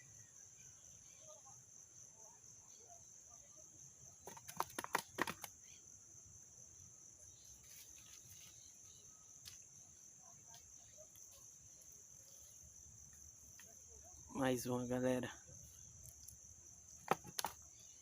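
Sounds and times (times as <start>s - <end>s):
insect trilling: 7.2s - 18.0s.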